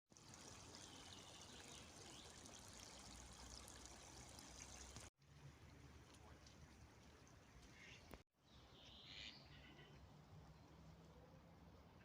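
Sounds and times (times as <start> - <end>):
flowing river water: 0.1 - 8.2.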